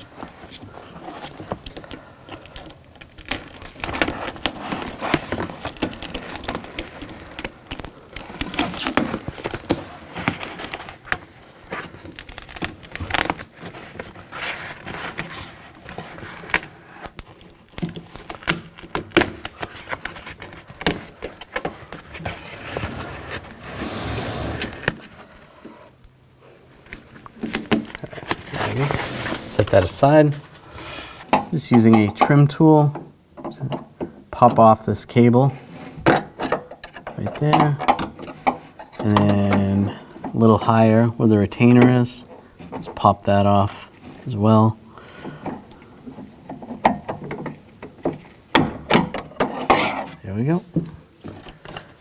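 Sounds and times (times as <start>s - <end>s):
plastic sheet crinkling and tearing: 11.6s - 15.1s.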